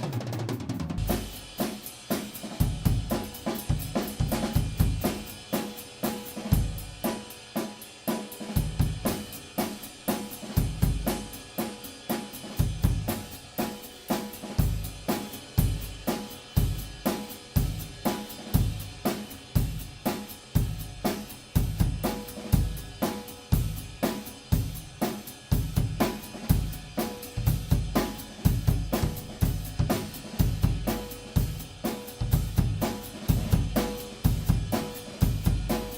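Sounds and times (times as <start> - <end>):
snare drum: 0.0 - 35.9
cymbals: 1.0 - 35.9
hi-hat: 1.0 - 35.9
heavy kick drum thumps: 25.6 - 35.9.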